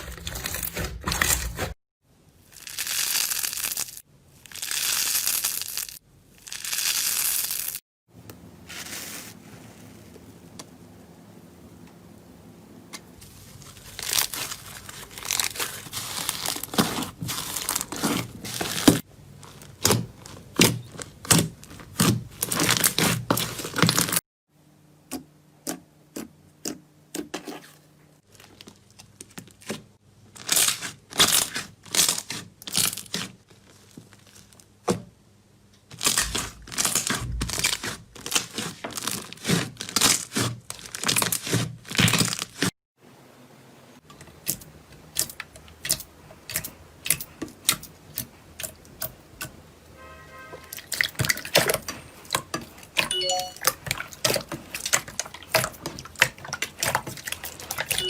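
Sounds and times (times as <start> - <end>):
slime crackling and popping: 2.5 - 7.8, 13.7 - 24.2, 35.9 - 42.7.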